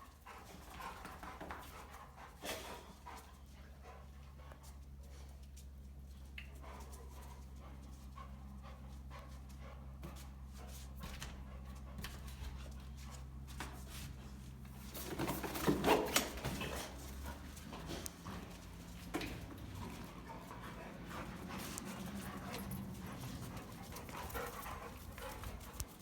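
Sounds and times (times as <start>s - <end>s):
dogs scuffling and tapping: 0.2s - 26.0s
dogs growling aggressively: 15.4s - 26.0s.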